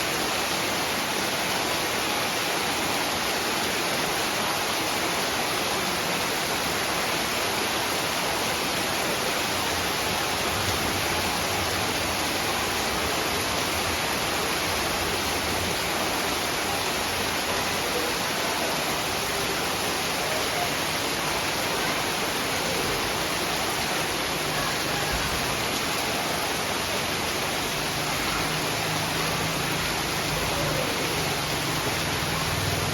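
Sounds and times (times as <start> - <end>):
heavy rain: 0.0 - 32.9.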